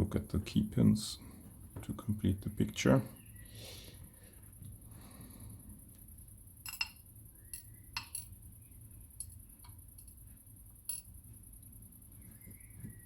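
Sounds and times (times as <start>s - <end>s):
metal pins clinking: 6.6s - 8.4s.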